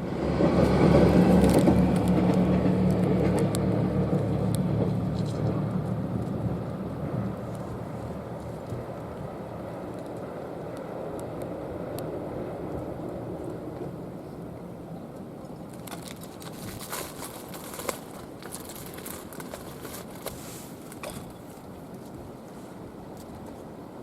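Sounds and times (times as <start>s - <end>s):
crackling and crinkling: 15.6s - 22.2s.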